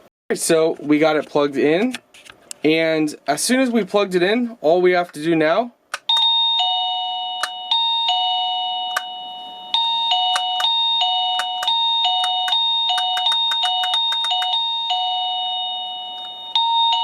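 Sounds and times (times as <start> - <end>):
electronic doorbell chime melody: 6.1 - 17.0.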